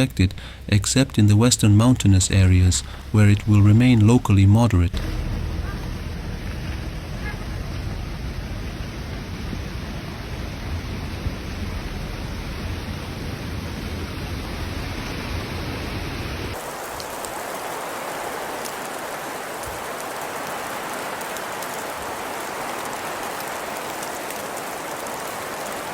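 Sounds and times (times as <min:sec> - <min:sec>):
rain hissing: 0:00.0 - 0:25.9
low rumble: 0:00.1 - 0:16.3.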